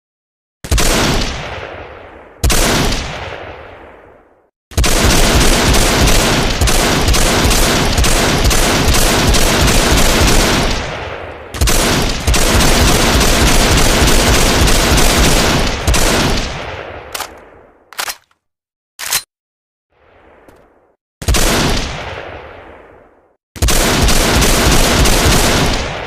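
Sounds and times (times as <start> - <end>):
automatic rifle bursts: 17.2 - 17.4.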